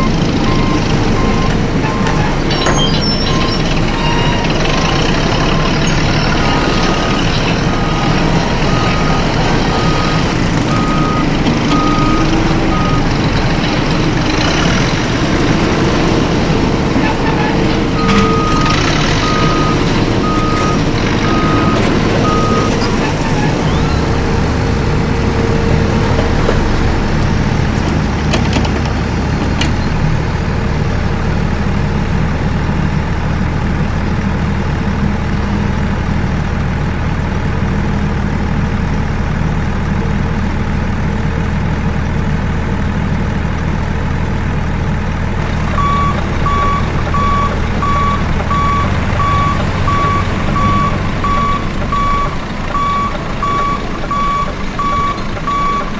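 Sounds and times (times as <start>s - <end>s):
reversing alarm beeping: 0.0s - 16.4s, 17.2s - 28.3s, 45.6s - 55.9s
truck engine rumbling: 0.0s - 55.9s.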